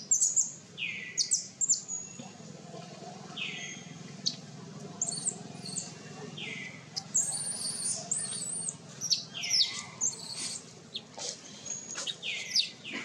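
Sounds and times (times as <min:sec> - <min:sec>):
baby monkey screeching: 0:05.0 - 0:05.9, 0:07.1 - 0:10.6.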